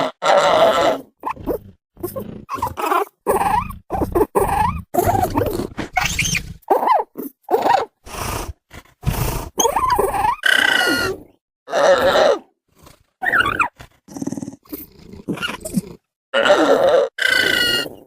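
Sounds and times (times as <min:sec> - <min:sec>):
dinosaur creature calls: 0:00.0 - 0:07.9, 0:09.6 - 0:12.5, 0:13.2 - 0:13.8, 0:16.4 - 0:18.0.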